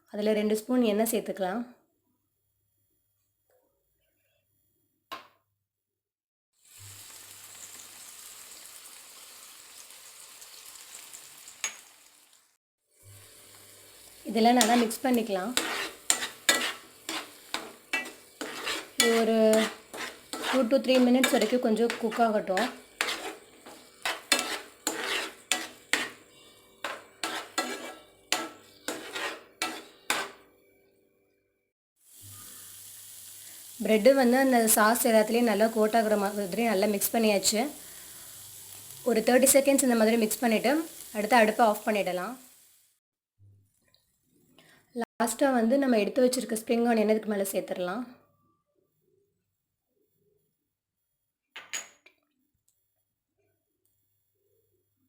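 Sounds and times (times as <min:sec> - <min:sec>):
oil sizzling in a hot pan: 0:06.6 - 0:30.5, 0:32.0 - 0:43.0
utensil clanking against pan: 0:15.6 - 0:26.2, 0:26.8 - 0:30.4.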